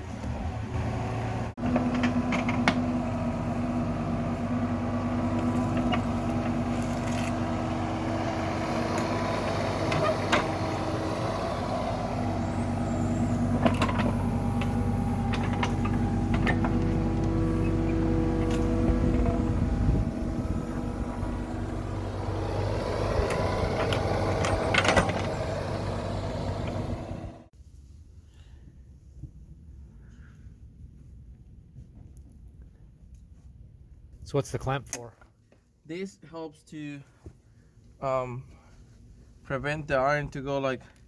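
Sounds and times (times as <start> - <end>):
heavy machinery engine running: 0.4 - 27.5
metallic clanks and knocks: 23.2 - 25.6.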